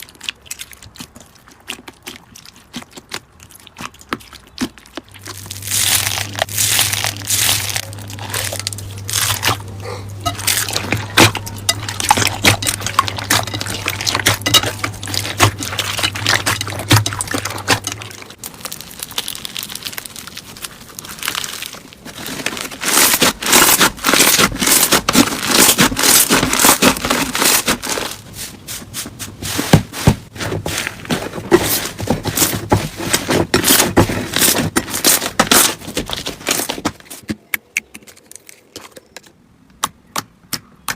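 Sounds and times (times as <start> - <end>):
slime squished by hand crackling: 0.0 - 9.7, 17.6 - 28.1
steady low hum: 5.1 - 18.6.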